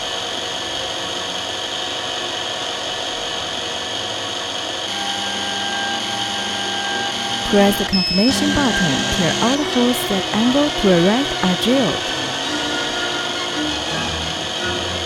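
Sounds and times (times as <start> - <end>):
drill motor whining: 3.0 - 15.0
lower hum: 4.9 - 15.0.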